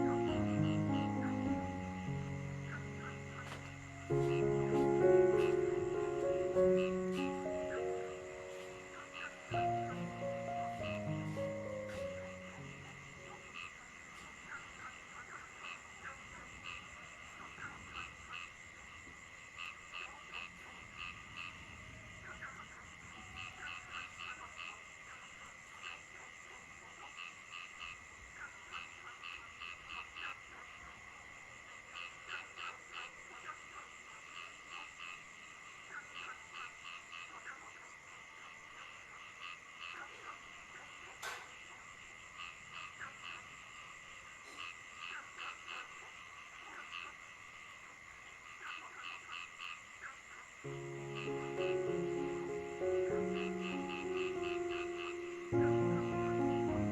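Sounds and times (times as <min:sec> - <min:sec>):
frogs croaking: 0:00.0 - 0:56.9.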